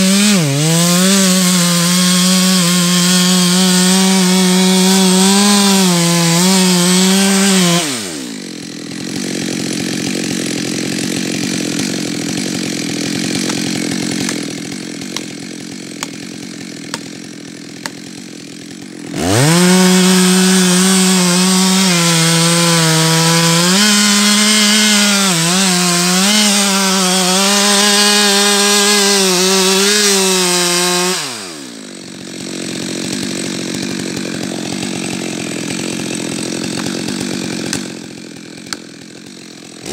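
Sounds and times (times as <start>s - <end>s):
chainsaw revving and idling: 0.0s - 39.9s.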